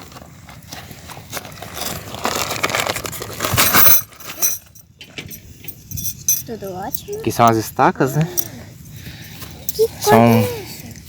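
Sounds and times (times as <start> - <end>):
bag rustling: 0.0 - 4.8
metal tent stakes clinking: 0.0 - 11.0.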